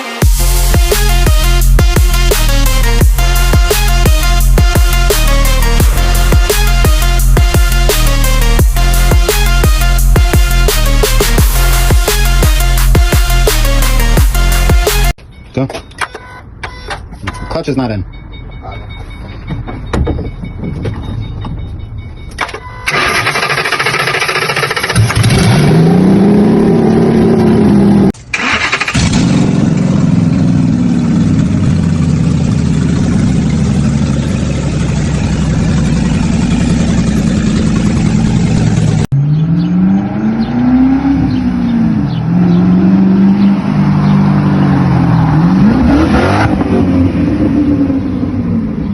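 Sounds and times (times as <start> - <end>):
loud car engine revving: 22.9 - 48.9.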